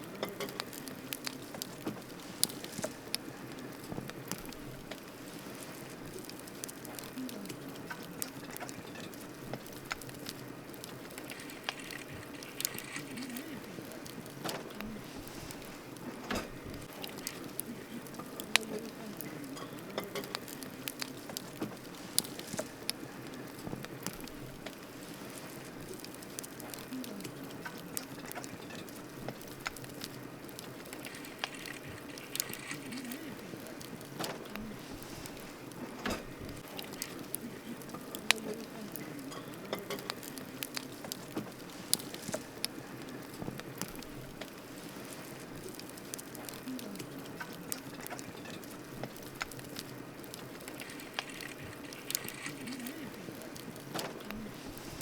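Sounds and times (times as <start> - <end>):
campfire crackling and popping: 0.0 - 55.0.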